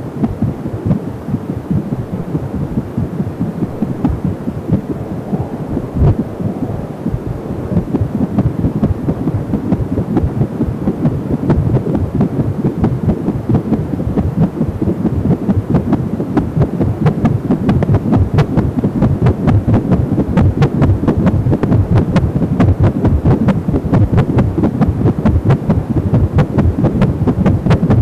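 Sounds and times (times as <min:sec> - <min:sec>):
heartbeat pulsing through speaker: 0:00.0 - 0:28.0.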